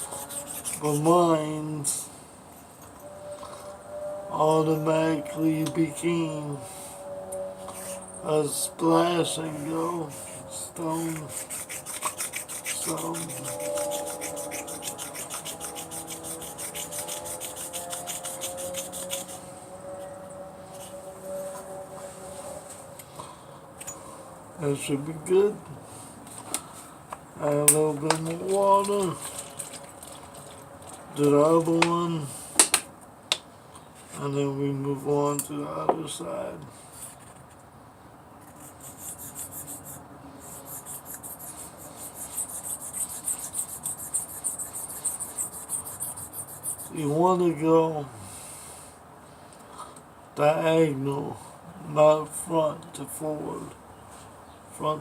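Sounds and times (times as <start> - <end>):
blade scraping on wet whetstone: 0.0 - 1.1, 10.1 - 19.5, 38.5 - 47.0.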